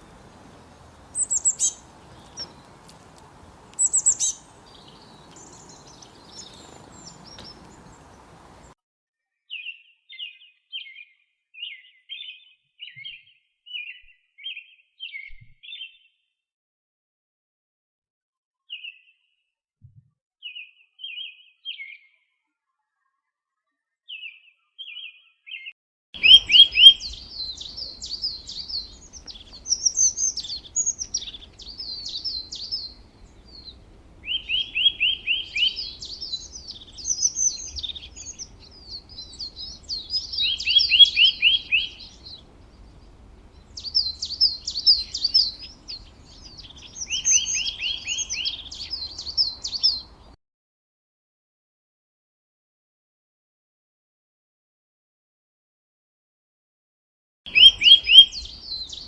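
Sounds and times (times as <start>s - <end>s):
short bird chirps: 0.0s - 8.8s, 26.2s - 50.3s, 57.5s - 59.0s
songbird singing: 0.0s - 8.8s, 26.2s - 50.4s, 57.5s - 59.0s.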